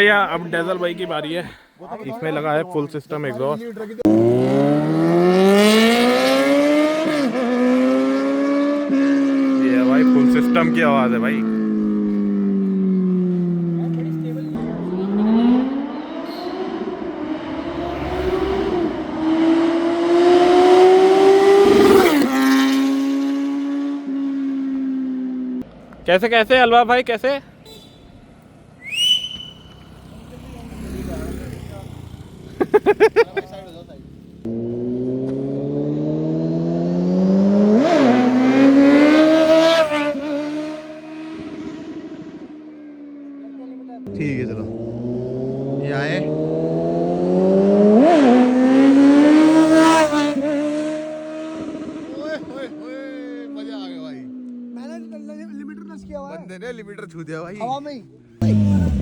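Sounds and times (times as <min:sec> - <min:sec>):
motorcycle accelerating and passing: 0:04.0 - 0:26.0, 0:28.2 - 0:57.8, 0:58.4 - 0:59.0.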